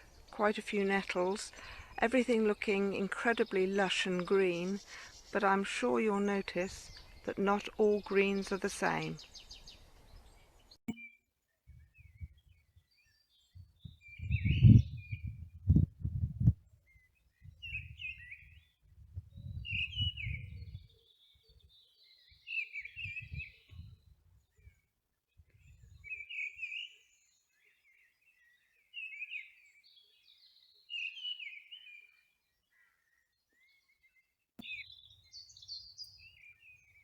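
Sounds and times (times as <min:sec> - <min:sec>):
songbirds chirping: 0:00.0 - 0:15.8, 0:16.6 - 0:37.0
low rumbles on microphone: 0:13.6 - 0:16.8, 0:18.9 - 0:20.9.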